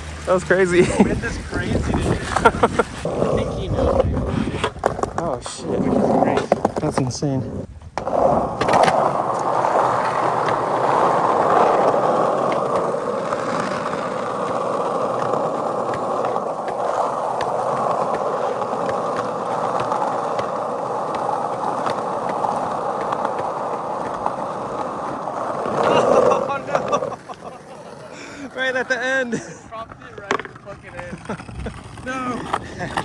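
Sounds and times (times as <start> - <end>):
skateboard wheels rolling on asphalt: 0.0 - 33.0.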